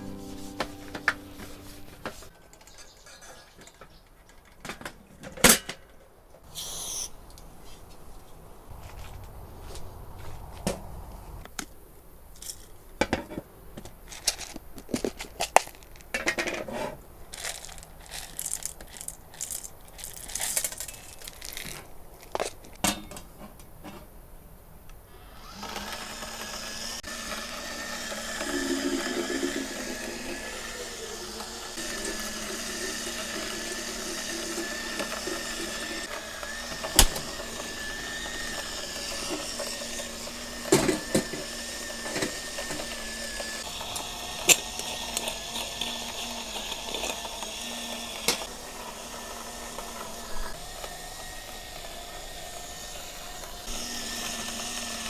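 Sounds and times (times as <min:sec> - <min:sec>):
small electric motor whining: 0:25.1 - 0:55.0.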